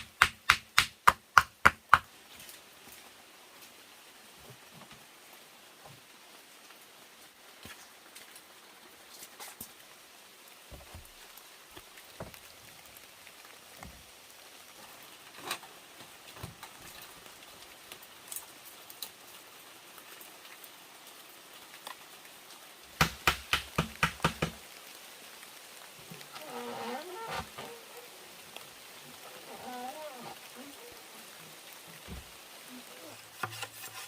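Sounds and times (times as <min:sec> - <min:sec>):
steady rain: 0:00.0 - 0:34.0
sharp knocks: 0:23.0 - 0:24.6.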